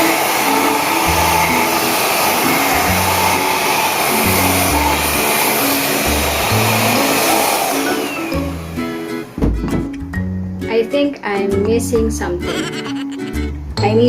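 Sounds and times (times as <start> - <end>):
vacuum cleaner whirring: 0.0 - 9.4
music with stepping bass line: 9.4 - 10.5.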